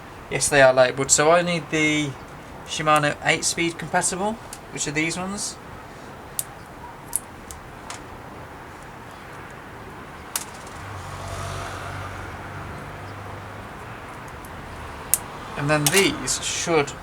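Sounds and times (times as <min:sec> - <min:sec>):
sharp plastic clicks: 0:06.3 - 0:08.1.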